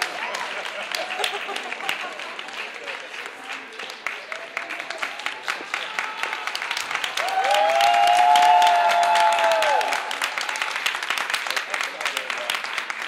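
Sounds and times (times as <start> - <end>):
audience applauding: 0.0 - 13.0
high cheer from crowd: 4.3 - 11.6.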